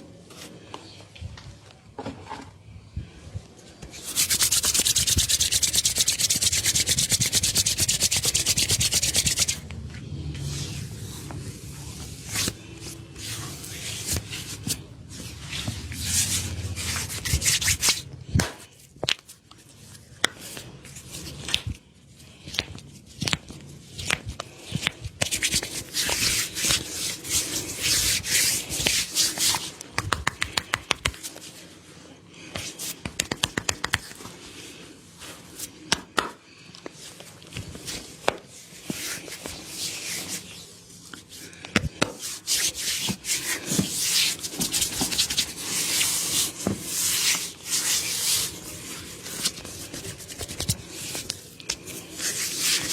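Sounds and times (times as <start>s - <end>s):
hands rubbing over skin: 4.0s - 9.6s, 10.4s - 18.0s, 24.1s - 31.6s, 32.6s - 34.3s, 42.0s - 52.9s.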